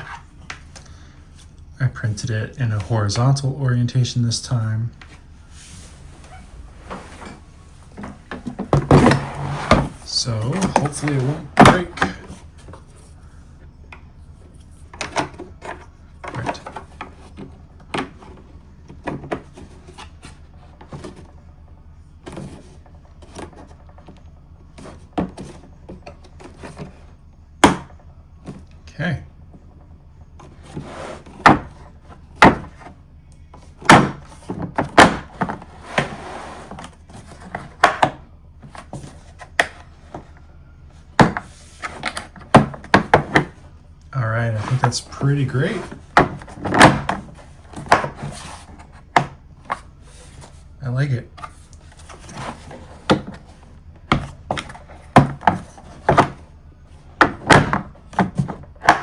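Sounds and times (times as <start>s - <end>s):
case lid closing: 45.7s - 49.9s.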